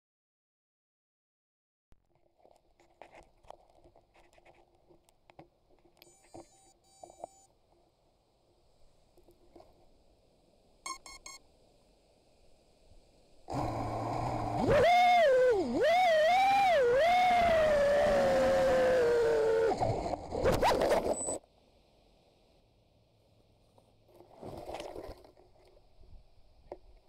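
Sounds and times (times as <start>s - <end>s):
short electronic beeps: 10.8s - 11.4s
drone motors whining: 13.5s - 20.2s.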